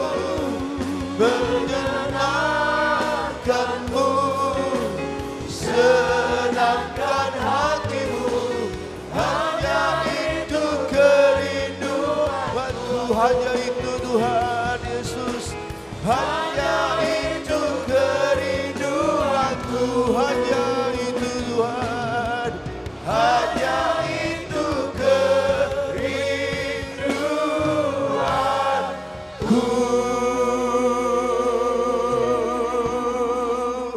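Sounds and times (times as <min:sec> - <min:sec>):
choir singing: 0:00.0 - 0:33.9
worship band playing: 0:00.0 - 0:33.9.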